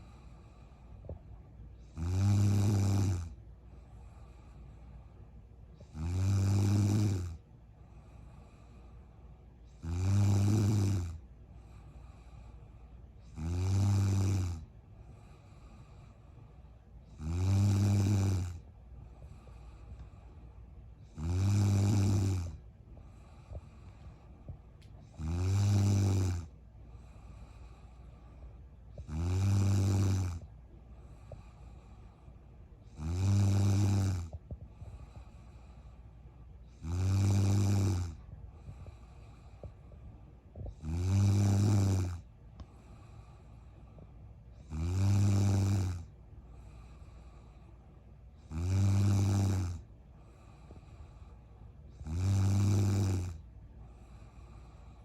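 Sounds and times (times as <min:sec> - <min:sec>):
woman snoring: 0:01.8 - 0:03.4, 0:05.8 - 0:07.4, 0:09.7 - 0:11.2, 0:13.3 - 0:14.7, 0:17.1 - 0:18.6, 0:21.0 - 0:22.6, 0:25.1 - 0:26.6, 0:29.0 - 0:30.5, 0:32.9 - 0:35.6, 0:36.7 - 0:39.1, 0:40.6 - 0:42.3, 0:44.6 - 0:47.2, 0:48.4 - 0:51.3, 0:52.0 - 0:53.4.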